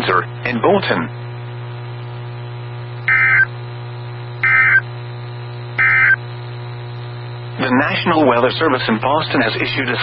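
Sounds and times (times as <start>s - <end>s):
steady electrical hum: 0.0s - 10.0s
buzzy warbling tone bursts: 3.1s - 3.5s, 4.4s - 4.8s, 5.8s - 6.2s.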